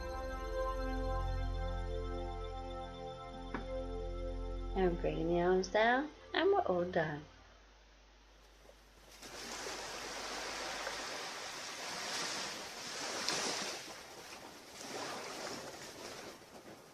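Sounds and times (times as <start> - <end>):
surf washing onto beach: 9.1 - 16.6.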